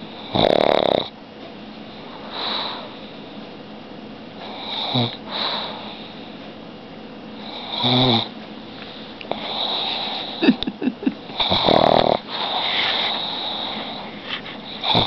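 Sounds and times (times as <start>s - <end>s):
dog snoring: 0.2s - 1.1s, 4.4s - 6.1s, 7.4s - 8.3s, 9.3s - 15.0s
wheezy breaths: 1.9s - 3.4s, 4.4s - 6.4s, 8.7s - 10.6s, 11.3s - 15.0s.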